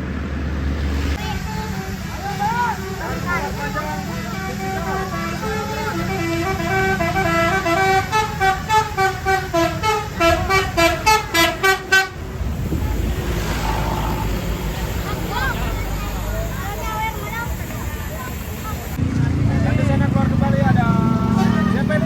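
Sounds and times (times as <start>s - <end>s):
bus engine rumble: 0.0s - 22.0s
musical air horn melody: 1.2s - 13.6s.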